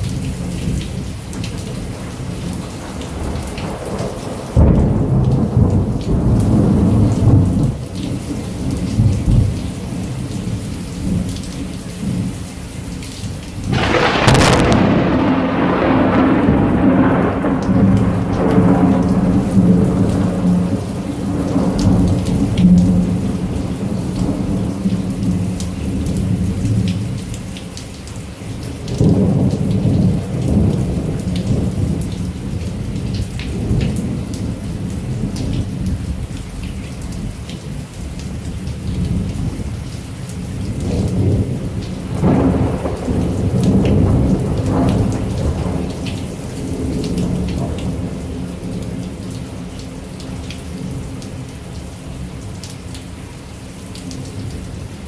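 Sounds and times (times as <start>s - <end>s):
heavy rain: 0.0s - 55.0s
rolling thunder: 2.4s - 9.7s, 13.7s - 27.0s, 40.8s - 49.3s.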